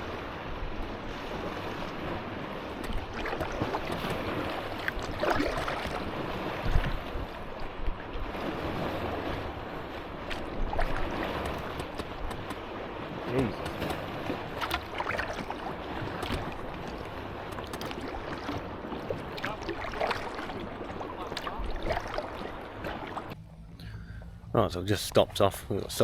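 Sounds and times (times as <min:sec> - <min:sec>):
wind on microphone: 0:00.0 - 0:17.0
water splashing against kayak: 0:00.0 - 0:23.4.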